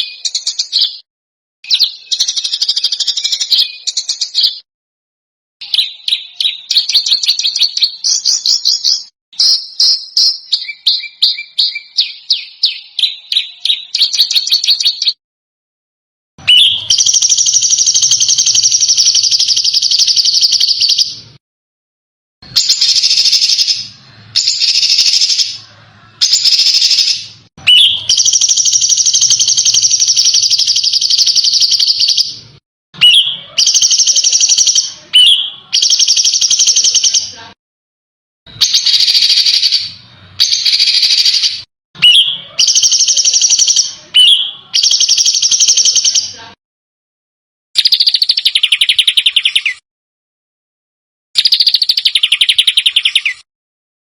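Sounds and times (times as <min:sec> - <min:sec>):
songbird high-pitched trills: 0:05.6 - 0:15.2, 0:16.4 - 0:21.1, 0:26.2 - 0:32.3, 0:38.6 - 0:46.3.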